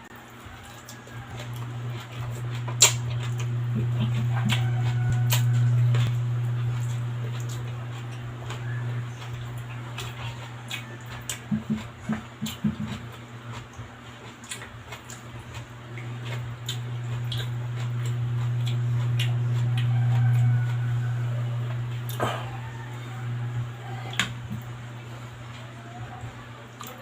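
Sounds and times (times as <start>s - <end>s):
close chewing and mouth sounds: 0.0s - 27.0s
steady low hum: 0.0s - 27.0s.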